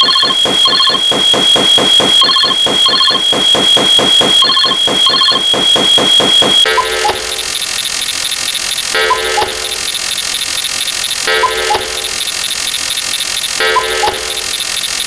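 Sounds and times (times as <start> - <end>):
mix of looped sound effects: 0.0 - 7.7, 8.9 - 10.0, 11.3 - 12.2, 13.6 - 14.7.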